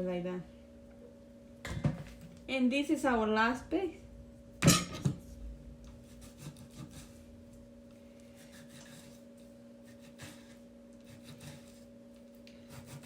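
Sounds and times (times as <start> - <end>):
low hum: 0.0 - 10.0
knife scraping on cutting board: 6.0 - 7.2, 8.3 - 11.9, 12.6 - 13.0.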